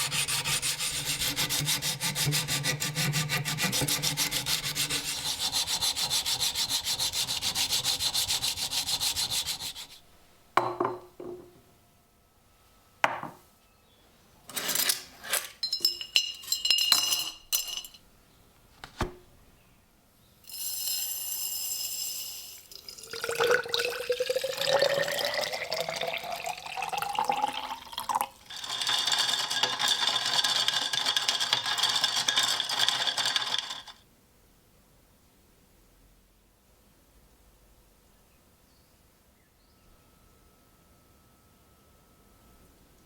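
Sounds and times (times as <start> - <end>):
glass and metal clinking: 10.6 - 11.5, 14.5 - 18.0, 20.5 - 34.0
liquid poured into container: 22.6 - 28.9.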